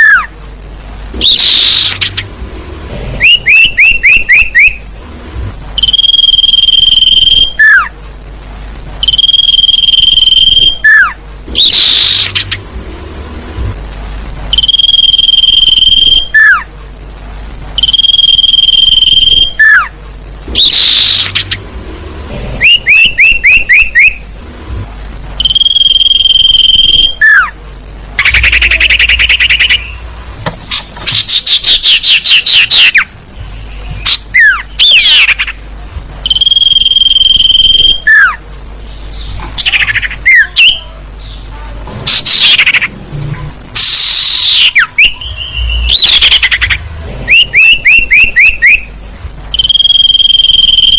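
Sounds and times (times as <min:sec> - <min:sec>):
bird trills and chattering: 0:01.2 - 0:02.3, 0:03.2 - 0:04.9, 0:09.0 - 0:12.6, 0:20.6 - 0:21.6, 0:28.2 - 0:30.0, 0:30.7 - 0:33.1, 0:33.7 - 0:35.6, 0:39.1 - 0:41.4, 0:43.8 - 0:49.0.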